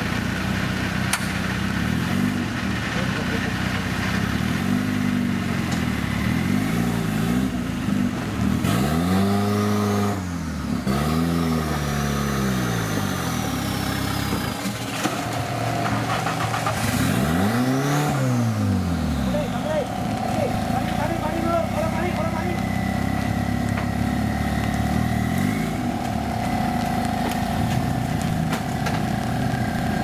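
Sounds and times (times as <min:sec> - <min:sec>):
engine revving hard: 0:01.7 - 0:28.4.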